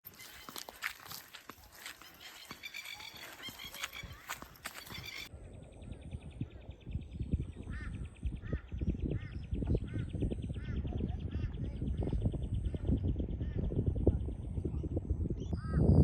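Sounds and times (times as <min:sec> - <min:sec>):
bird calling: 0:00.1 - 0:05.3
wind rumble on microphone: 0:03.8 - 0:16.0.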